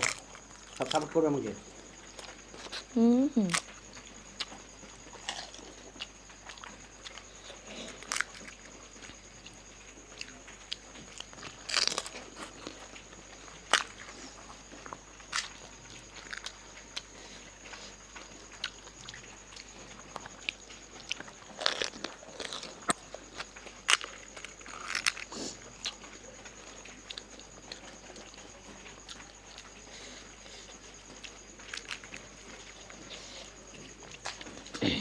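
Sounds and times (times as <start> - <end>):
crisp shells crunching in mouth: 11.2 - 12.8, 21.1 - 25.3.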